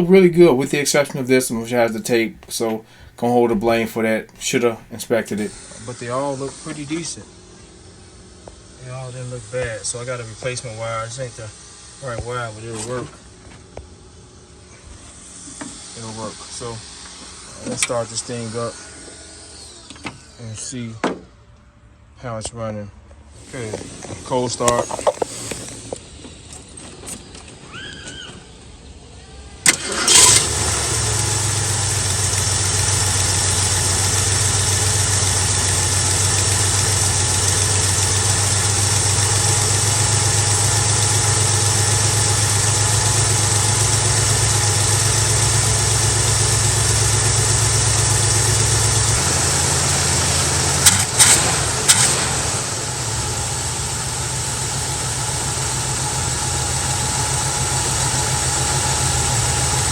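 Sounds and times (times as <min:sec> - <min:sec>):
car engine cranking: 0:00.0 - 0:05.6, 0:23.5 - 0:27.1, 0:29.6 - 0:59.9
car engine idling: 0:00.0 - 0:05.7, 0:29.7 - 0:59.9.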